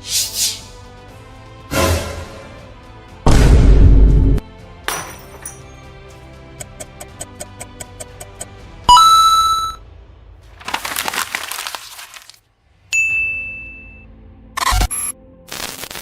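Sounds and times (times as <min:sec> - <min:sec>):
fast even ticking: 0:06.6 - 0:08.5
burst of crackling: 0:15.5 - 0:16.0.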